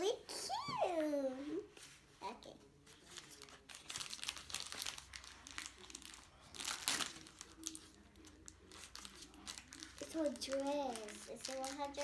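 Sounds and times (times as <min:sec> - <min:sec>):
plastic packaging crinkling: 0:03.0 - 0:12.0.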